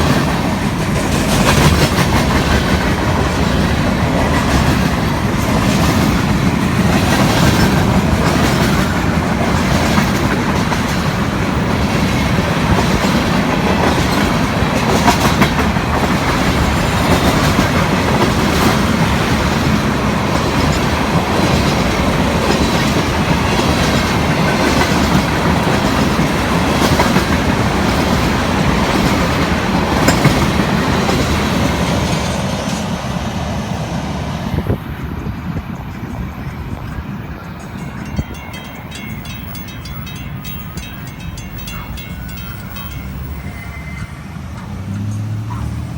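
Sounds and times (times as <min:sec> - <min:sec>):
train wheels clicking over rail joints: 0:00.0 - 0:33.2
wheel squeal: 0:41.6 - 0:45.9.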